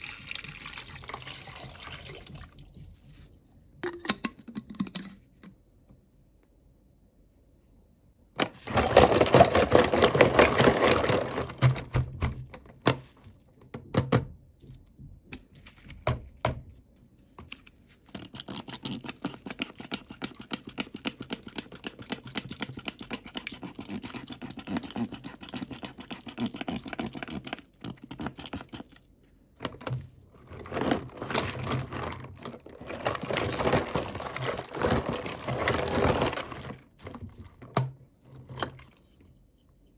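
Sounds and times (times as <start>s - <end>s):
plastic packaging crinkling: 8.5s - 11.9s, 30.4s - 37.3s.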